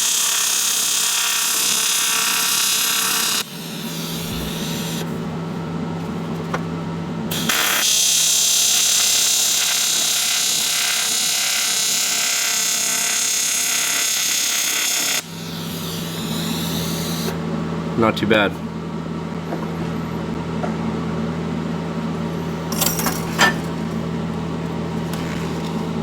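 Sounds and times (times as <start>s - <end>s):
welding arc buzzing hiss: 0.0s - 5.2s, 7.3s - 17.4s.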